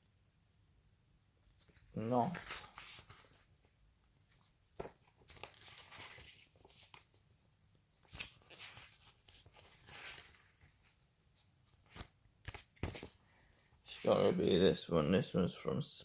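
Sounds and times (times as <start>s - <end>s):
packaging and paper crinkling: 4.8s - 7.2s.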